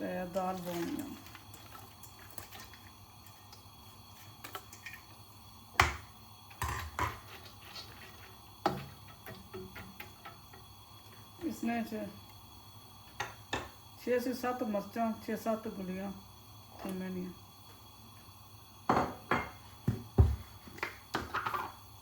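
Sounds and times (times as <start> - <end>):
utensils knocking on cooking pot: 6.6 - 7.2, 8.6 - 10.6.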